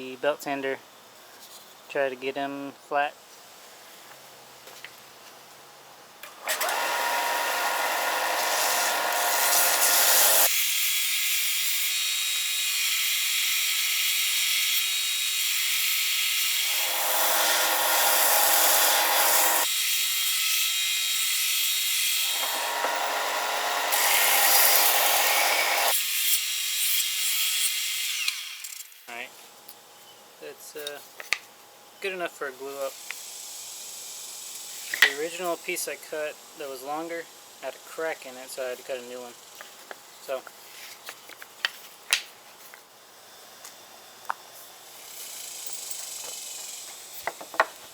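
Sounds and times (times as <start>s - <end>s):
belt sander sanding wood: 6.6s - 10.5s, 16.7s - 19.7s, 22.2s - 26.0s.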